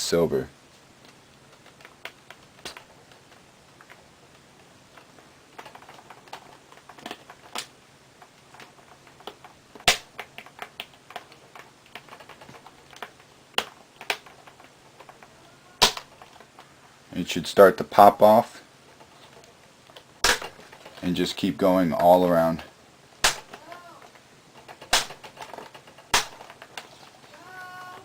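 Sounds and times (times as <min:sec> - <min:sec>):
plastic clips snapping: 0:24.6 - 0:26.9.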